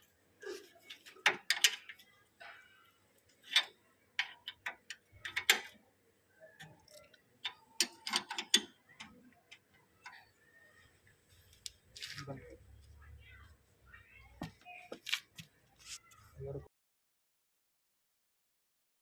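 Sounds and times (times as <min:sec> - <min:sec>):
tools clicking and knocking: 0:00.9 - 0:02.0, 0:03.4 - 0:05.8, 0:06.6 - 0:10.3.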